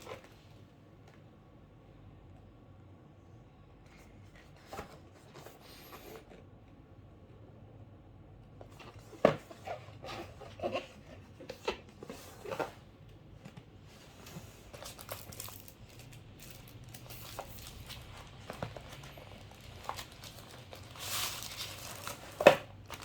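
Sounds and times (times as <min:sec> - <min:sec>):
packaging crinkling and rustling: 0:08.8 - 0:23.0.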